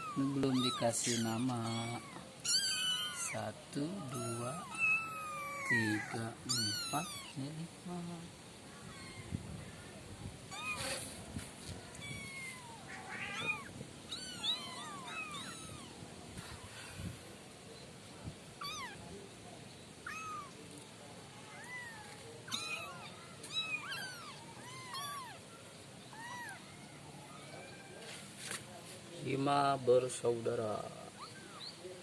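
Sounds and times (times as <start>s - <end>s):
kittens mewing: 0.0s - 3.4s, 4.0s - 7.5s, 8.8s - 9.9s, 10.5s - 11.2s, 11.9s - 17.2s, 18.5s - 19.1s, 20.0s - 20.8s, 21.4s - 27.4s.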